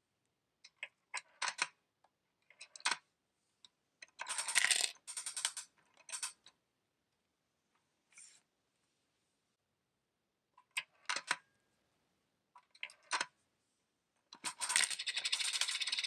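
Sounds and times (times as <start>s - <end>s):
coins clinking into machine: 4.3s - 5.6s, 14.5s - 16.0s
coins rattling clatter: 4.3s - 5.6s, 14.5s - 16.0s.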